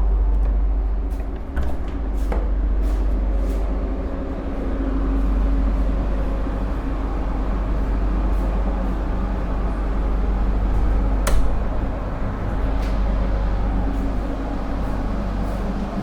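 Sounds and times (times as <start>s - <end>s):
train rumble from inside coach: 0.0s - 16.0s.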